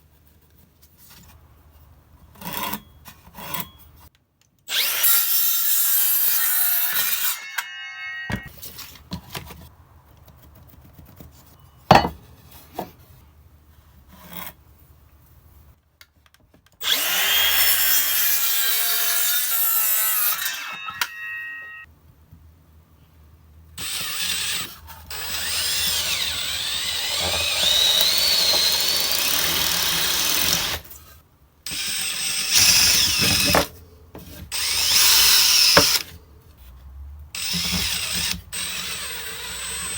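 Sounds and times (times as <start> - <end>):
power tools cutting wood: 4.7 - 8.5, 16.8 - 21.8, 23.8 - 30.8, 31.7 - 33.7, 34.5 - 36.1, 37.4 - 39.9.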